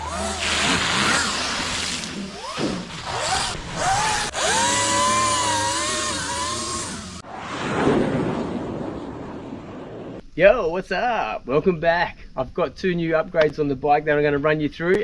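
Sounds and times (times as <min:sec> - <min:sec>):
electric motor whining: 0:00.0 - 0:07.2.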